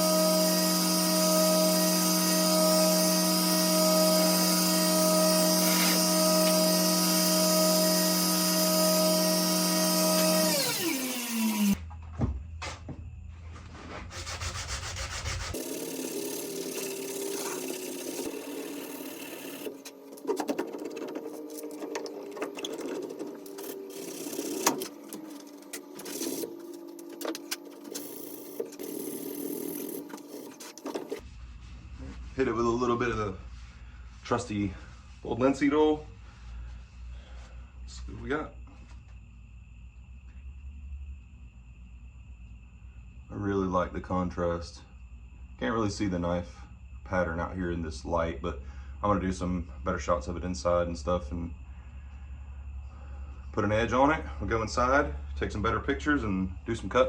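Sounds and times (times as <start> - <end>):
power tool motor humming: 0.0 - 11.8, 15.4 - 31.2
rubbing and scraping: 12.6 - 35.7.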